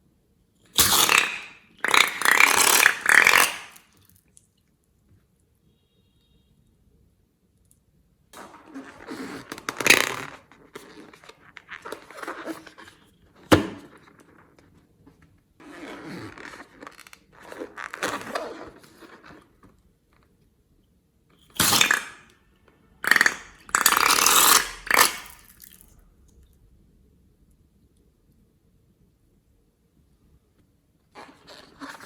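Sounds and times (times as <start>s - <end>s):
slime squelching and popping: 0.8s - 4.4s, 21.6s - 22.3s, 23.0s - 25.9s.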